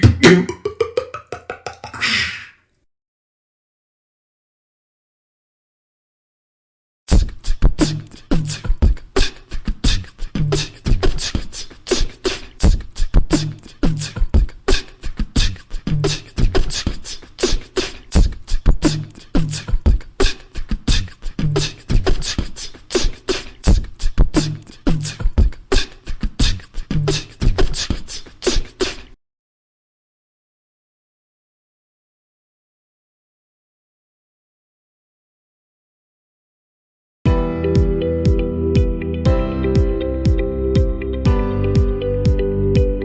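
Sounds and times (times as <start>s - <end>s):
person beatboxing: 0.0s - 2.6s, 7.1s - 29.2s.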